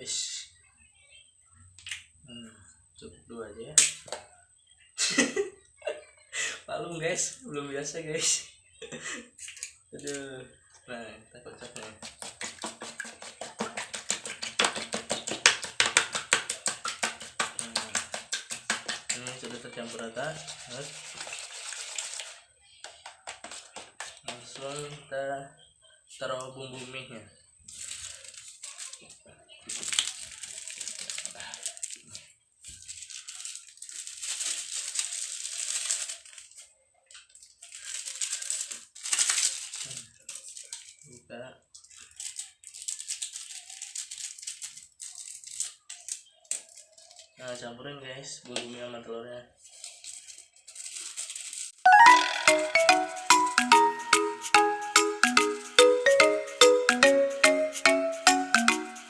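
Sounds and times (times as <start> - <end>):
eggs beaten in a bowl: 11.6 - 24.7
plastic sachets crinkling and tearing: 27.6 - 47.6, 49.6 - 51.8.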